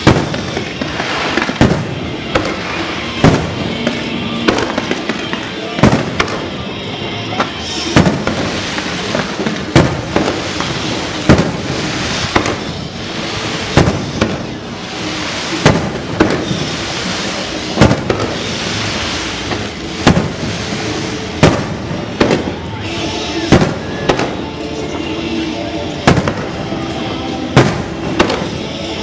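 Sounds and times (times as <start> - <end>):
fireworks booming: 0.0 - 29.0
fireworks crackling: 0.0 - 29.0.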